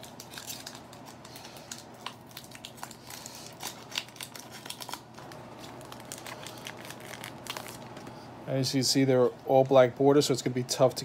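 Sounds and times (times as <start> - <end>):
card pack wrapper crinkling and tearing: 0.0 - 8.1.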